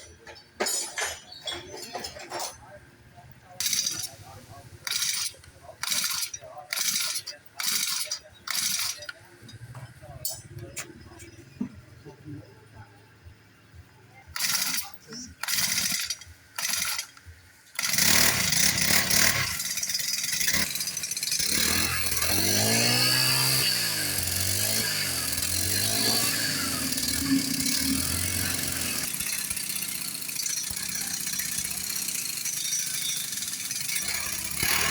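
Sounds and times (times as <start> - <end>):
boat engine starting and revving: 17.8 - 19.6, 21.4 - 29.1, 34.0 - 34.9.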